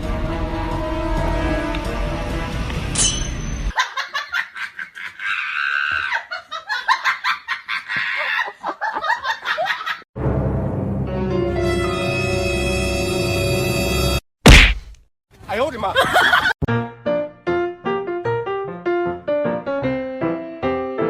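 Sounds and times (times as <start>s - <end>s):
background music: 0.0s - 3.2s
high-pitched laughter: 3.8s - 10.0s.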